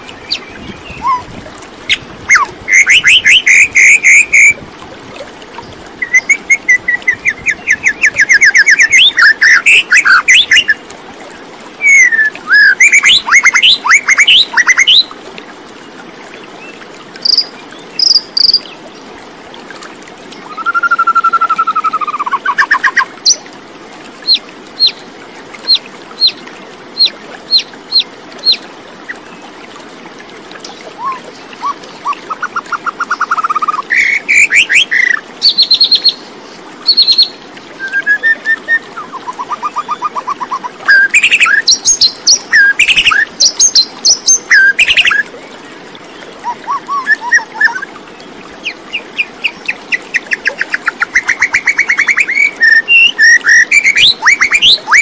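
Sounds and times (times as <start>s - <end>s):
birdsong with trills and whistles: 0.0s - 1.3s, 1.9s - 4.6s, 6.0s - 10.8s, 11.8s - 15.1s, 30.6s - 45.2s, 46.4s - 55.0s.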